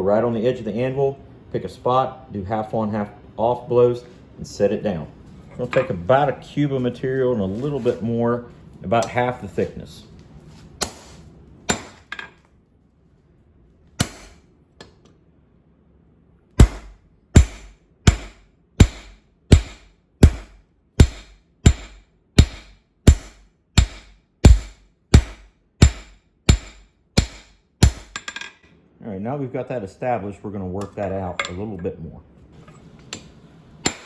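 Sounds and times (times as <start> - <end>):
hammer striking steel on anvil: 10.8 - 11.1, 11.7 - 12.3, 14.0 - 14.4, 16.6 - 28.5, 33.1 - 34.0.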